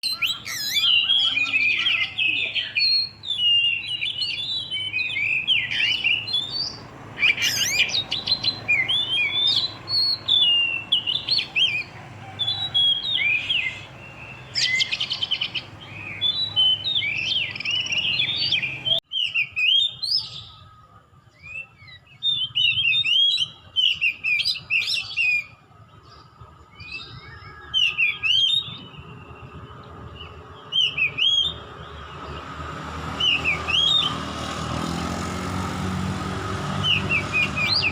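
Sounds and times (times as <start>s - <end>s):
bird singing whistled phrases: 0.0s - 20.3s, 36.8s - 37.9s.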